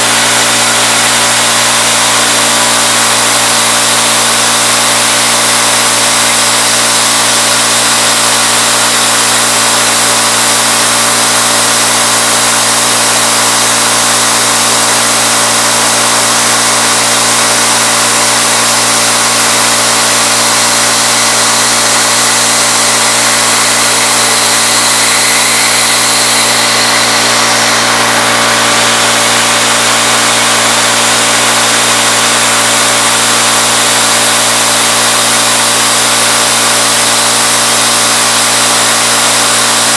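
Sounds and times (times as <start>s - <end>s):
end mill cutting metal hiss: 0.0s - 39.9s
milling machine whine: 0.0s - 39.9s.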